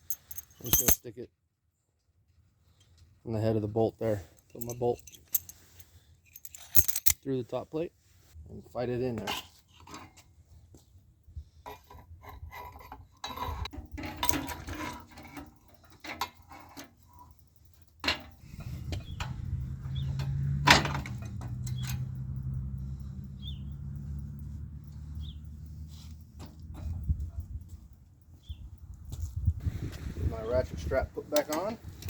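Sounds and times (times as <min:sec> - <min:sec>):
metal tools clinking: 0:00.0 - 0:01.1, 0:04.0 - 0:07.2, 0:11.7 - 0:27.1
steady low hum: 0:17.4 - 0:31.9.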